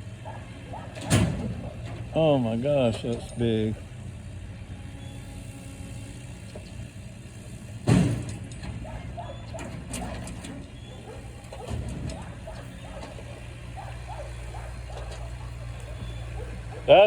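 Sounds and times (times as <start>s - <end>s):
engine running: 0.0s - 17.0s
metallic clanks and creaks: 0.8s - 2.2s, 6.4s - 16.9s.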